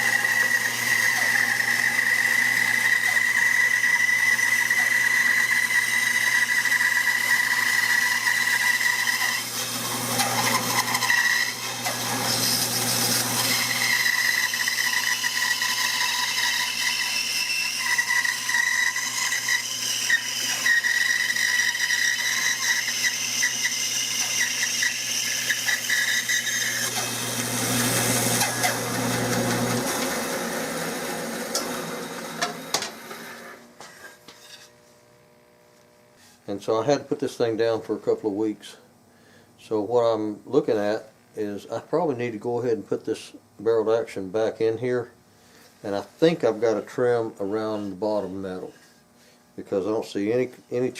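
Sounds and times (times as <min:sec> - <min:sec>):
bandsaw cutting wood: 0:00.0 - 0:33.6.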